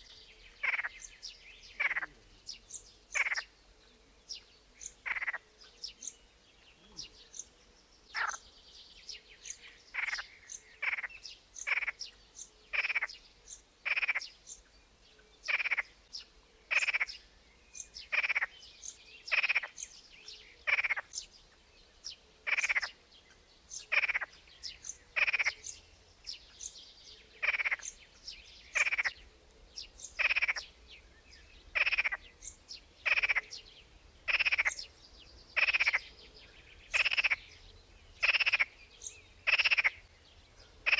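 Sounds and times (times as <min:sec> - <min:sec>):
birds chirping faintly: 0:00.0 - 0:40.9
frog croaking: 0:00.6 - 0:01.0, 0:01.7 - 0:02.3, 0:03.1 - 0:03.5, 0:04.9 - 0:05.4, 0:08.1 - 0:08.4, 0:09.9 - 0:12.0, 0:12.7 - 0:13.2, 0:13.8 - 0:14.3, 0:15.5 - 0:16.0, 0:16.7 - 0:17.2, 0:18.1 - 0:18.5, 0:19.3 - 0:19.8, 0:20.6 - 0:21.1, 0:22.4 - 0:23.0, 0:23.9 - 0:24.4, 0:25.1 - 0:25.7, 0:27.4 - 0:27.9, 0:28.7 - 0:29.2, 0:30.2 - 0:30.8, 0:31.7 - 0:32.3, 0:33.0 - 0:33.6, 0:34.3 - 0:34.9, 0:35.5 - 0:36.1, 0:36.9 - 0:37.6, 0:38.2 - 0:38.8, 0:39.4 - 0:40.0.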